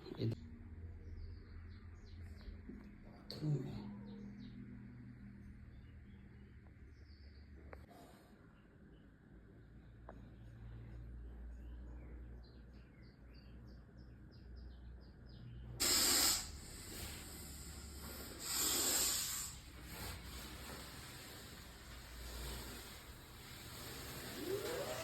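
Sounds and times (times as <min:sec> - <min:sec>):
birds chirping: 0:08.5 - 0:25.0
snake hissing: 0:15.8 - 0:25.0.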